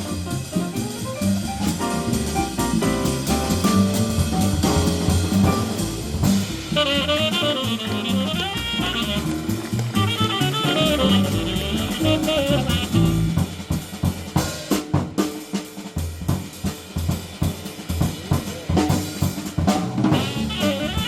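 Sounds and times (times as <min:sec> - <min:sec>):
jazz drum kit break: 0:00.0 - 0:21.0
tenor saxophone phrases: 0:06.8 - 0:13.3, 0:20.3 - 0:21.0.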